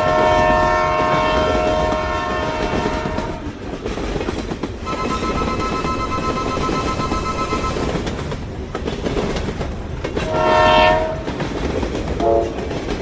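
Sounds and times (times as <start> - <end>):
train horn: 0.0 - 3.5, 10.3 - 11.3, 12.2 - 12.6.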